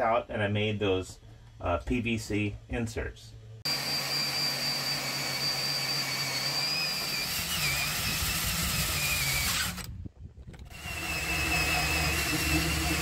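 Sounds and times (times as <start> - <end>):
power tool motor whining: 3.7 - 10.0, 10.6 - 13.0.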